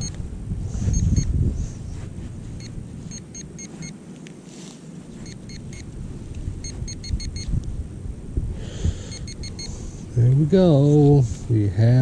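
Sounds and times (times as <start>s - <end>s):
metal detector beeps: 0.0s - 0.2s, 0.9s - 1.3s, 2.6s - 4.0s, 5.2s - 6.0s, 6.6s - 7.5s, 9.1s - 9.8s
wind: 0.0s - 12.0s.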